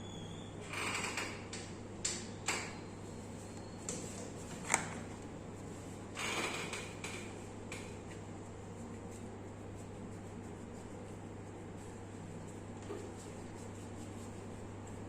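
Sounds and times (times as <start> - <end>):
steady low hum: 1.3 - 15.0
hands rubbing skin: 7.8 - 15.0.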